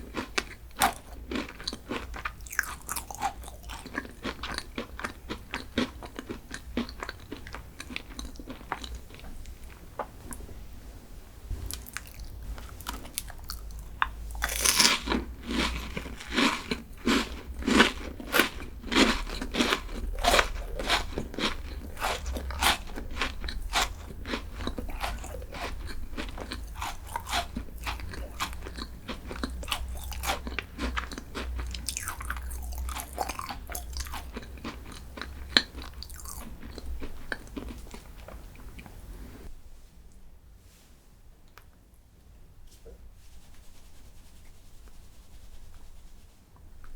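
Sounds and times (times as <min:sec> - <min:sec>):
crunching chews: 0:00.0 - 0:10.4, 0:11.6 - 0:39.5
crunchy bite: 0:11.7 - 0:38.1.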